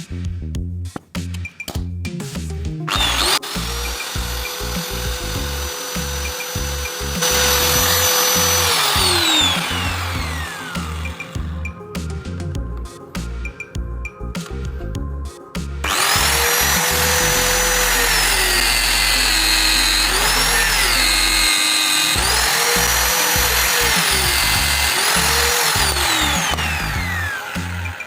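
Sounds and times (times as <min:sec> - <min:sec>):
background music: 0:00.0 - 0:28.0
electric power tool whining: 0:02.9 - 0:11.5, 0:15.8 - 0:28.0.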